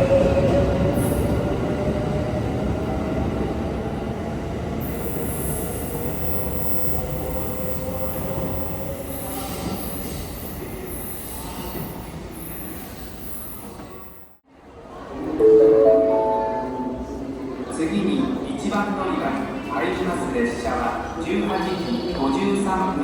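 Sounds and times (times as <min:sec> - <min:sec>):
train wheel squeal: 0:04.8 - 0:14.3.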